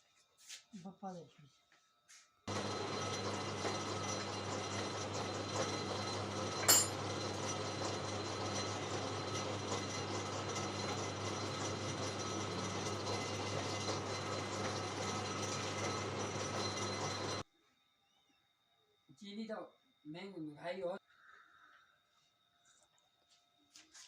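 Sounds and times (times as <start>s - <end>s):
sawmill engine humming: 2.5s - 17.4s
sharp metallic clink: 6.7s - 7.0s.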